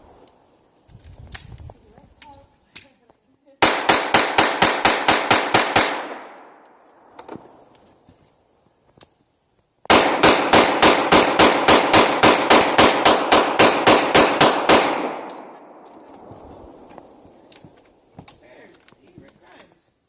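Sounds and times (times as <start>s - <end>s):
rapid gunfire: 3.6s - 6.2s, 9.9s - 15.2s.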